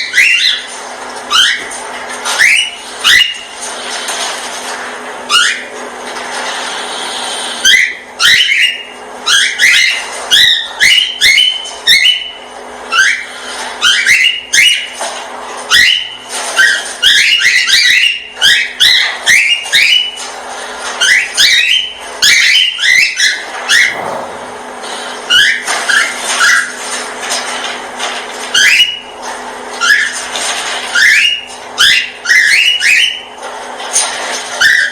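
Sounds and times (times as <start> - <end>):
steady low hum: 23.8 - 25.1.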